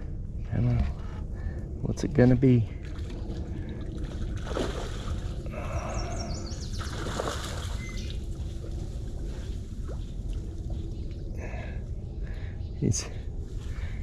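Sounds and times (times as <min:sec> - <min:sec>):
water sloshing and splashing: 0:02.8 - 0:06.0, 0:06.7 - 0:10.8
bird singing: 0:05.5 - 0:08.3.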